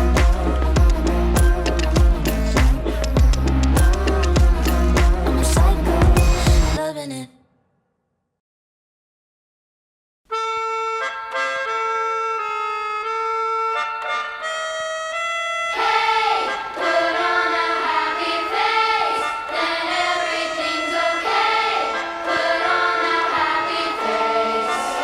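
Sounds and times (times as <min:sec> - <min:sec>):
held instrumental notes: 0:00.0 - 0:06.8
choir-like singing: 0:00.0 - 0:07.0, 0:15.7 - 0:25.0.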